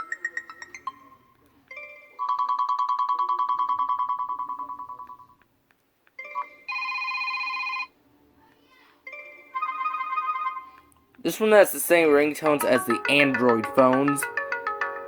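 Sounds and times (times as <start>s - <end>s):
plucked-note ringtone melody: 0.0s - 5.3s, 9.1s - 10.7s, 12.3s - 15.0s.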